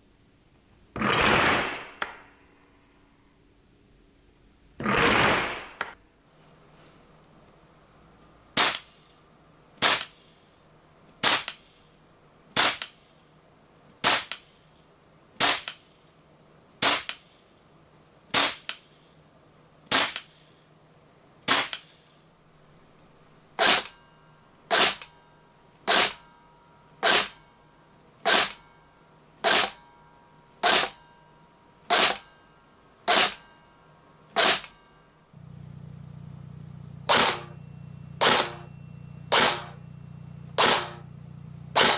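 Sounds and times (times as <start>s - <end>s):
airsoft rifle shots: 1.0s - 2.2s, 4.8s - 6.0s, 8.6s - 9.0s, 9.8s - 10.3s, 11.2s - 11.7s, 12.6s - 13.0s, 14.0s - 14.4s, 15.4s - 15.8s, 16.8s - 17.2s, 18.3s - 18.9s, 19.9s - 20.4s, 21.5s - 22.0s, 23.6s - 24.0s, 24.7s - 25.0s, 25.9s - 26.2s, 27.0s - 27.4s, 28.2s - 28.7s, 29.4s - 29.8s, 30.6s - 31.0s, 31.9s - 32.3s, 33.1s - 33.5s, 34.4s - 34.8s, 37.0s - 37.6s, 38.2s - 38.7s, 39.3s - 39.8s, 40.5s - 41.0s
low steady hum: 18.9s - 41.9s.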